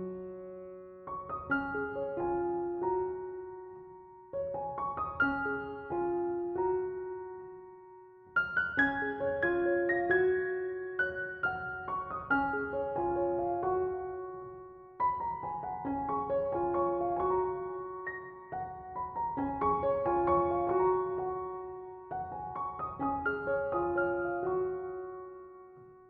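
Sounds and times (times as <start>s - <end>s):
gentle piano music: 0.0s - 26.0s.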